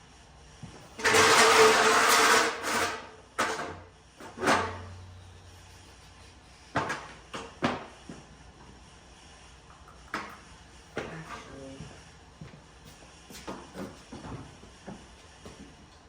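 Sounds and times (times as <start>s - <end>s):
truck hood scraping: 1.0s - 5.0s.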